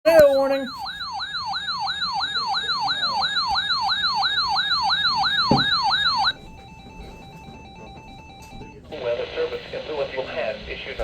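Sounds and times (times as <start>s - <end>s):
electronic siren alert tone: 0.1s - 8.9s
faint steady tones: 0.1s - 11.0s.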